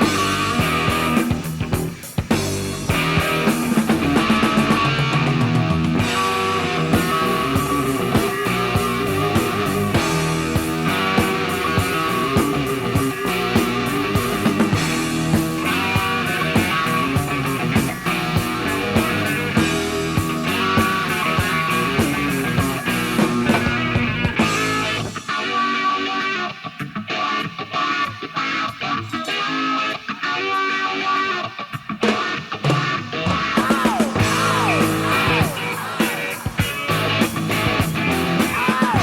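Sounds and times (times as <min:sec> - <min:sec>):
hard rock band playing: 0:00.0 - 0:39.0
drum hits: 0:32.7 - 0:39.0.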